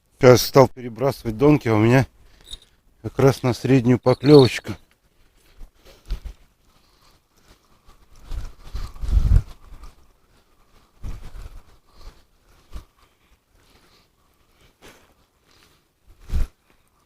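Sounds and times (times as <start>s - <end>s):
wind buffeting microphone: 8.2s - 10.0s.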